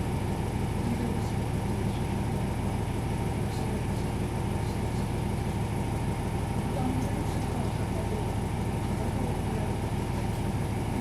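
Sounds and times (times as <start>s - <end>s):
diesel engine drone: 0.0s - 11.0s.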